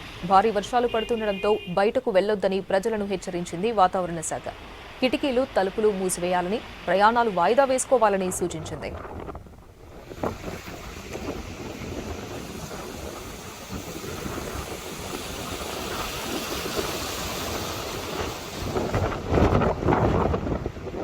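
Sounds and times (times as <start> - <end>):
storm wind: 2.1 - 21.0
wind gusts buffeting microphone: 3.1 - 21.0
heavy rain: 9.8 - 21.0.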